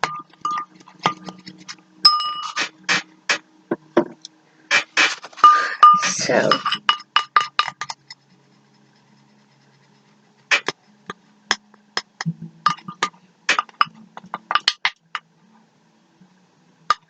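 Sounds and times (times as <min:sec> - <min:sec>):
metal spoon clinking against bowl: 0:00.0 - 0:01.4.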